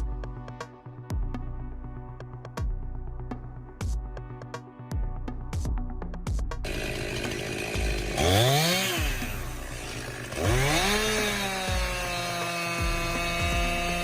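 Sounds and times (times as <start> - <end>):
chainsaw engine revving: 6.6 - 14.0.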